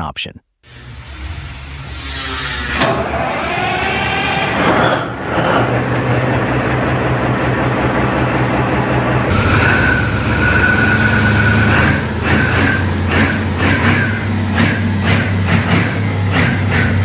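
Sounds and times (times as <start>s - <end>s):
diesel engine starting and running: 0.7s - 17.0s
starter clank and whine: 1.6s - 6.4s, 9.2s - 17.0s.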